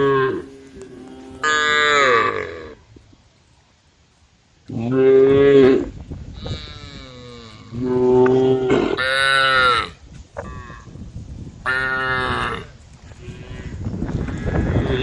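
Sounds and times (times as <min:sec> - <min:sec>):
cows mooing: 0:00.0 - 0:02.8, 0:04.9 - 0:10.8.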